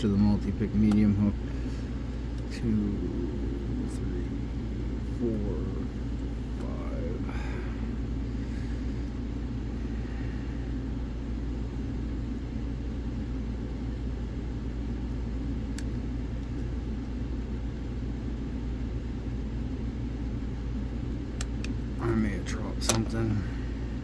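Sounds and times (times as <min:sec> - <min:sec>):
low rumble and hum: 0:00.0 - 0:24.0
lock picking click: 0:22.8 - 0:23.2.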